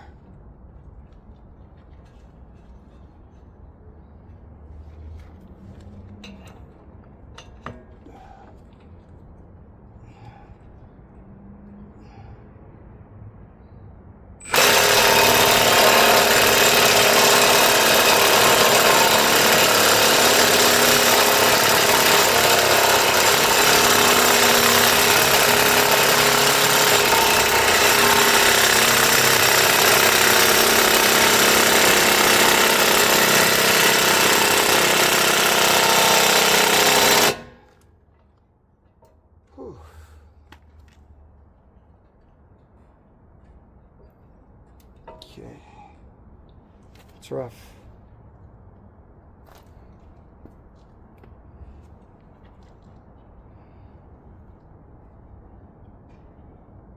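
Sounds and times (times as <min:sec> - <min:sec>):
power impact tool hammering: 0:14.4 - 0:37.8.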